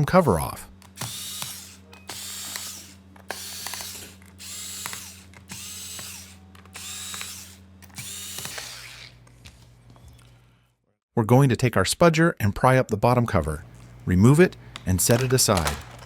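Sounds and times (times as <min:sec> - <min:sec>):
electric screwdriver whirring: 0:00.8 - 0:09.2.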